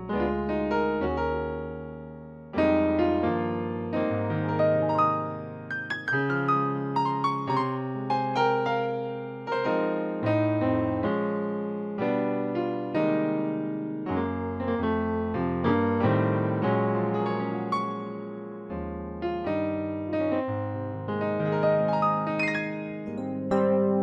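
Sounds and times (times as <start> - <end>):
electric piano gospel chords: 0.0 - 24.0
low bass notes: 23.0 - 24.0.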